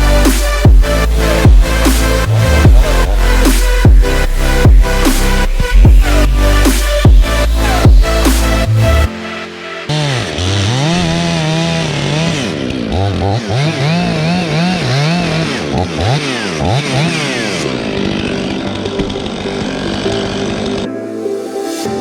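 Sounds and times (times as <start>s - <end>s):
chainsaw engine revving: 0.0s - 20.9s.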